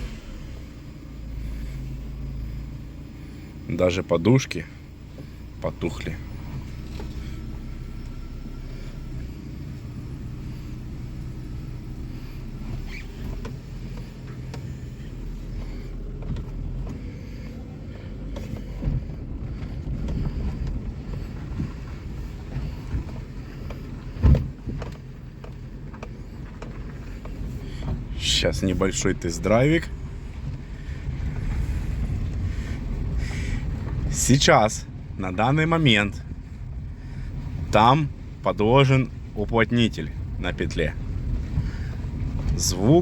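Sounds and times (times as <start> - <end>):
car engine running: 0.0 - 43.0
knocks and thump in car: 12.6 - 28.5.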